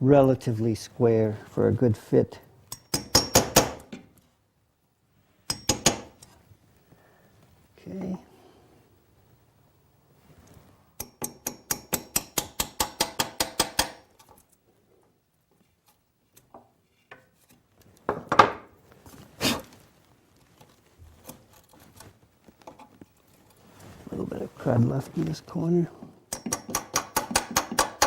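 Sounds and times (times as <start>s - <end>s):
hammer tapping metal chisel: 2.7s - 4.0s, 5.5s - 6.3s, 11.0s - 14.0s, 26.3s - 28.0s.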